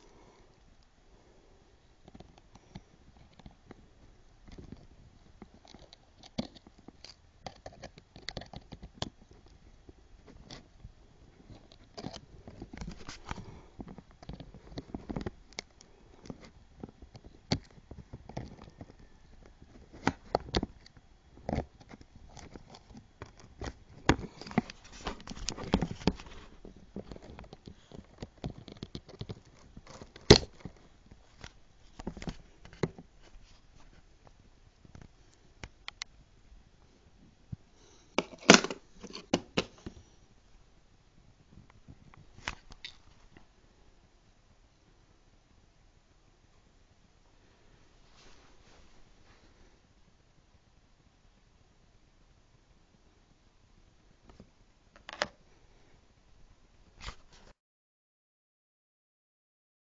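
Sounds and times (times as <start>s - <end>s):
scraping on phone casing: 38.1s - 39.8s.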